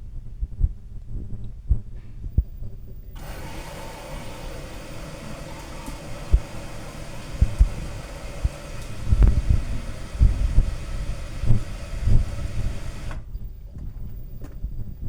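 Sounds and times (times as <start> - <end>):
steady hiss: 3.0 - 13.4
washing machine drum thumping: 3.1 - 13.3.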